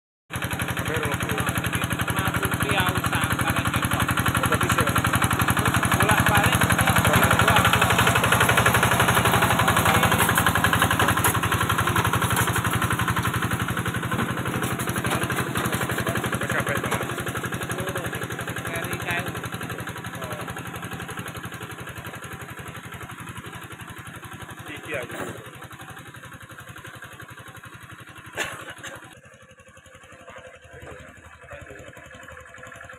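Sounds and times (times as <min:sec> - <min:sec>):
farm machine engine chugging: 0:00.3 - 0:32.9.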